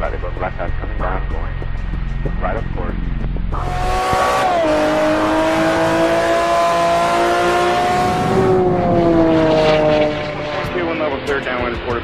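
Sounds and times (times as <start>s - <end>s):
high-revving engine accelerating: 3.5s - 12.0s.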